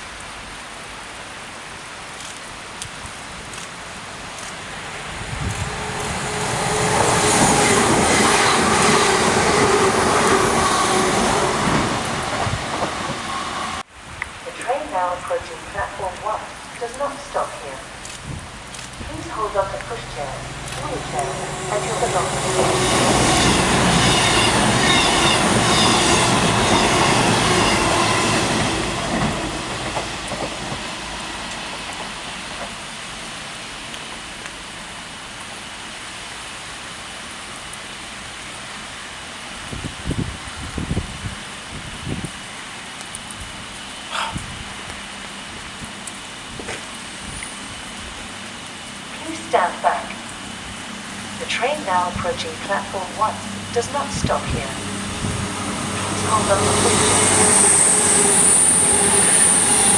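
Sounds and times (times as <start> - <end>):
train wheels rumbling: 4.1 - 13.8, 14.6 - 33.8, 48.3 - 59.9
train whine: 4.4 - 13.9, 14.5 - 33.6, 47.6 - 59.9
high wheel squeal: 22.4 - 27.9, 55.9 - 59.9.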